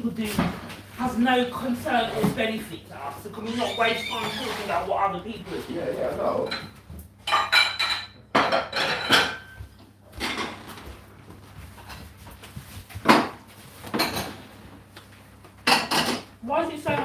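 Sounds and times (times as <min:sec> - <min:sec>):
dishes knocking and clinking: 0:06.4 - 0:11.0, 0:12.9 - 0:14.7, 0:15.6 - 0:17.0.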